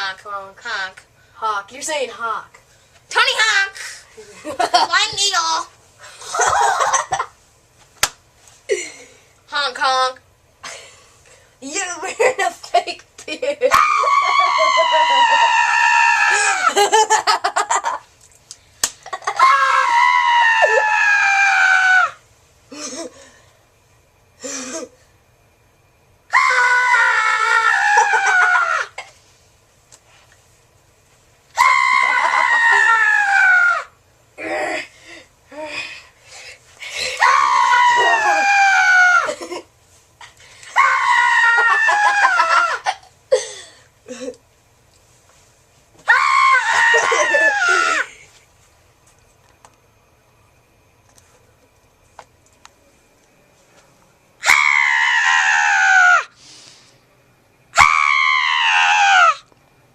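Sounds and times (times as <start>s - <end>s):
person screaming: 13.7s - 16.8s, 19.2s - 22.2s, 31.6s - 34.9s, 37.0s - 39.4s, 46.1s - 48.1s, 54.4s - 56.3s.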